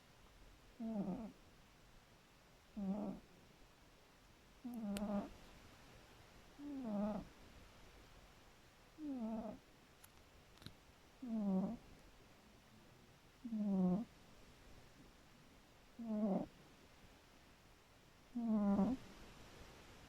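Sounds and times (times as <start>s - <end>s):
cat snoring: 0.8s - 1.4s, 2.8s - 3.3s, 4.6s - 5.3s, 6.6s - 7.3s, 9.0s - 9.6s, 11.2s - 11.8s, 13.4s - 14.1s, 16.0s - 16.5s, 18.3s - 19.1s.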